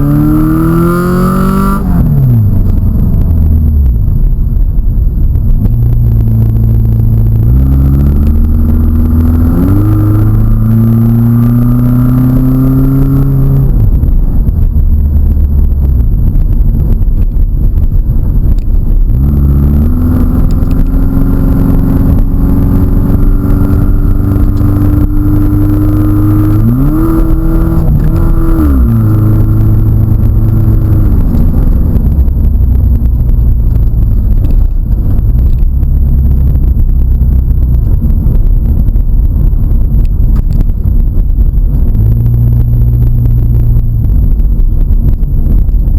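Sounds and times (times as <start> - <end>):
vehicle engine revving under load: 18.5 - 38.8.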